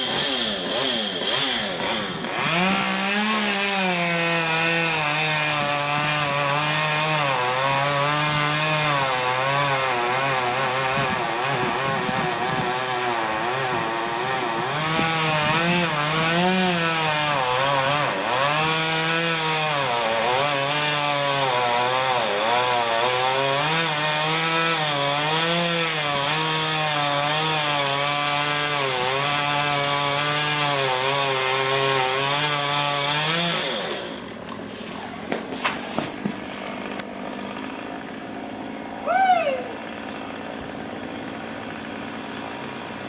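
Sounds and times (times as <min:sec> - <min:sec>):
chainsaw cutting wood: 0:00.0 - 0:43.0.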